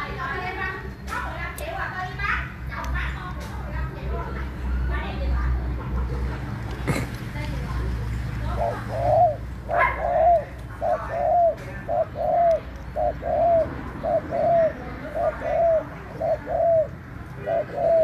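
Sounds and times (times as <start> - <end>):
dove cooing: 8.4 - 18.0.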